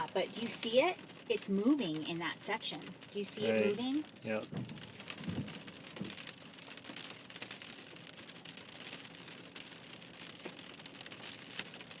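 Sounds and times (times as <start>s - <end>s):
rain pattering on car roof: 0.0s - 12.0s.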